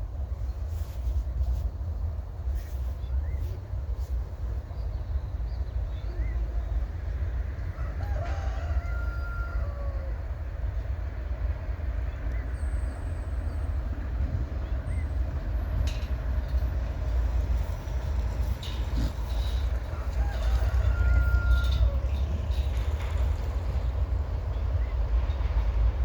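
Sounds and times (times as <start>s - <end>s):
rooster crowing: 7.6s - 10.5s, 19.4s - 23.2s
steady low rumble: 10.1s - 26.0s.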